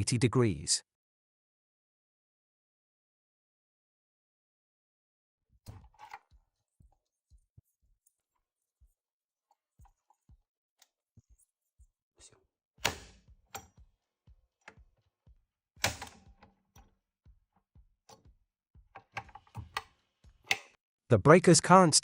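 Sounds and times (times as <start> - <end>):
circuit breaker mechanical clunks: 12.8 - 13.8, 15.8 - 16.9.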